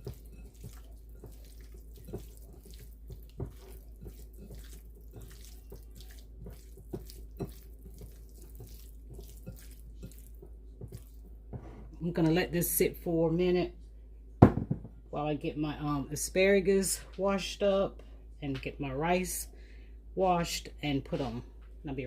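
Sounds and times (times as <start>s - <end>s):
wet squelching scrapes: 0.0s - 11.2s.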